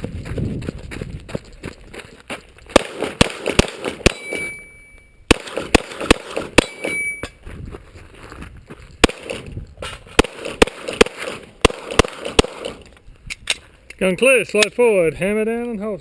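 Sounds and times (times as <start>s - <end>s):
rapid gunfire: 2.8s - 4.2s, 5.3s - 6.7s, 10.2s - 12.8s
steel targets ringing: 4.0s - 5.3s, 6.6s - 7.4s.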